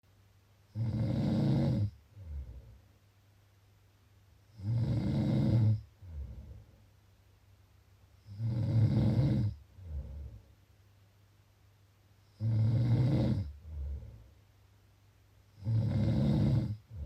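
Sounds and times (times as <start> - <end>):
person snoring: 0.7 - 2.8, 4.5 - 6.6, 8.2 - 10.4, 12.3 - 14.3, 15.5 - 17.0
soft breath: 5.9 - 7.0, 9.6 - 10.7, 13.5 - 14.5.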